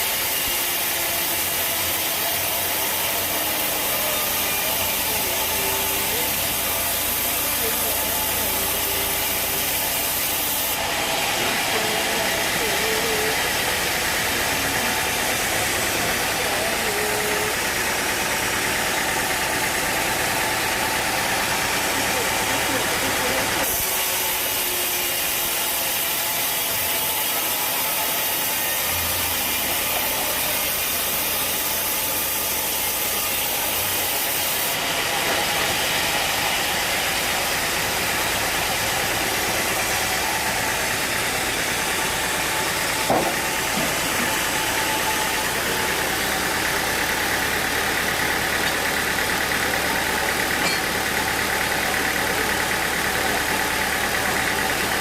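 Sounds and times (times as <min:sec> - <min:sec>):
sawmill machinery running: 0:00.0 - 0:55.0
sharp knock: 0:43.1 - 0:43.9.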